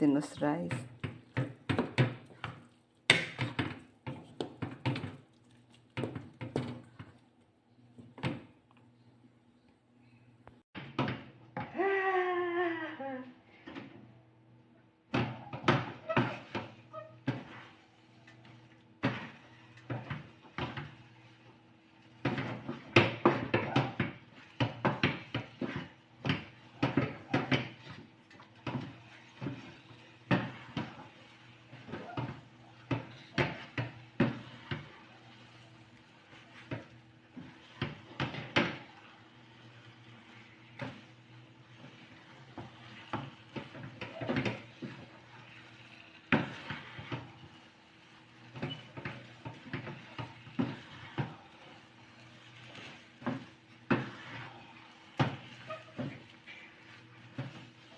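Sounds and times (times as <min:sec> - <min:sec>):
utensil scraping a pot: 0:15.7 - 0:57.9.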